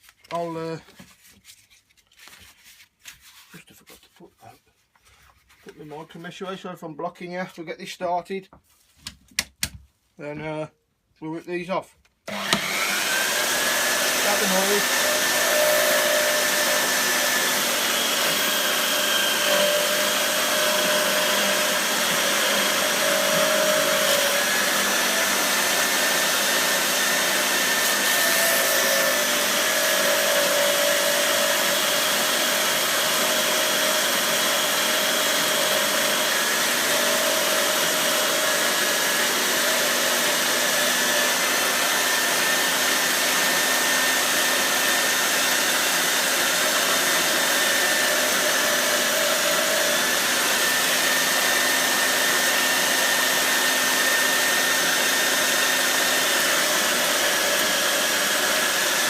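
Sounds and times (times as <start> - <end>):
surface grinder grinding: 12.3 - 59.0.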